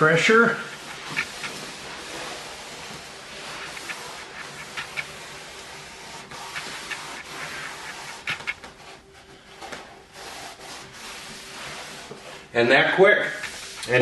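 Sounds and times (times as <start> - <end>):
metal socket rubbing wood veneer: 0.8 - 1.7.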